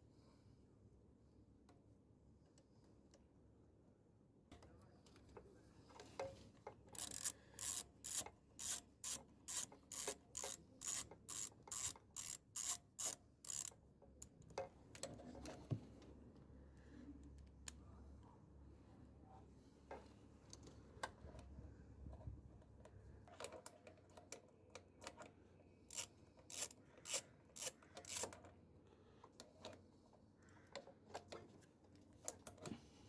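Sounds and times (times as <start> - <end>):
ratchet wrench clicking: 7.0 - 13.8, 25.9 - 28.4.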